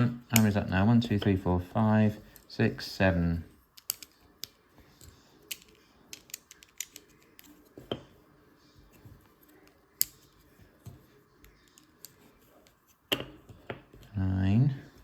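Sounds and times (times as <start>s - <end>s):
plastic toy bricks clicking: 5.5s - 7.5s.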